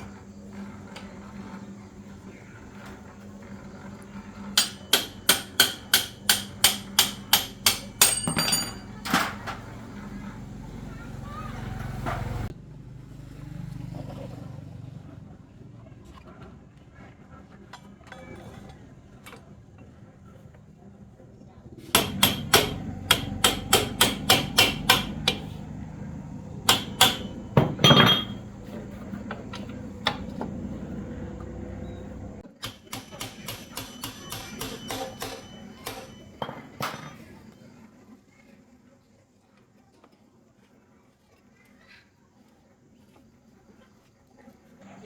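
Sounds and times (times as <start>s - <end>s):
hammer striking metal: 4.6s - 8.9s, 22.0s - 25.5s, 26.6s - 28.5s, 32.6s - 37.1s.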